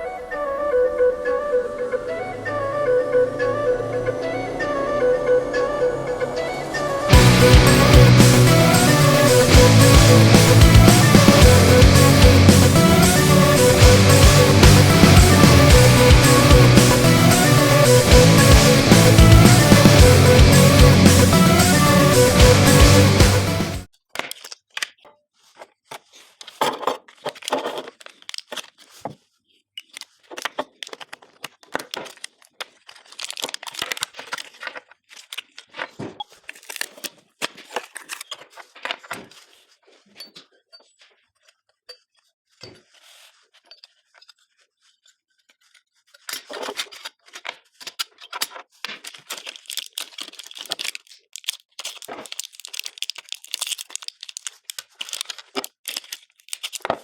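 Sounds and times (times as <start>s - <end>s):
plastic wrap crinkling and tearing: 23.9s - 40.1s, 42.8s - 57.0s.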